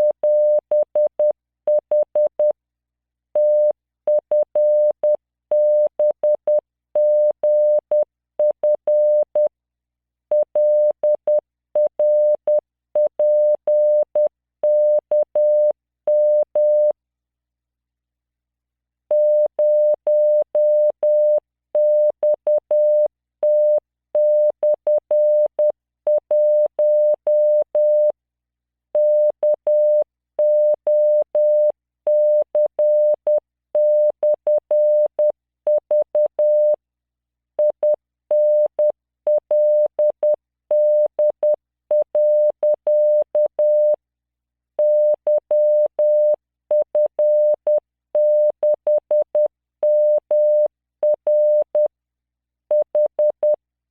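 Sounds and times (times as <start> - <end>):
morse code tone: 37.6 - 44.0, 44.8 - 51.9.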